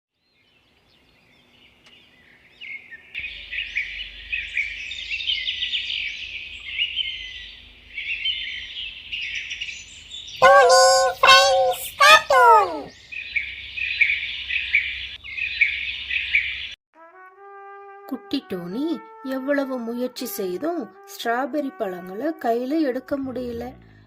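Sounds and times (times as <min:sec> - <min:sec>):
small birds chirping: 0:00.2 - 0:16.8
low bird call falling pitch: 0:10.4 - 0:12.9.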